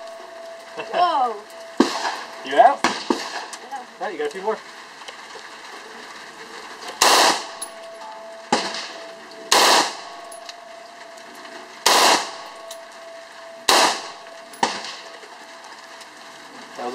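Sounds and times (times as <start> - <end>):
automatic rifle bursts: 7.0 - 7.6, 8.6 - 10.1, 11.8 - 12.4, 13.7 - 15.1.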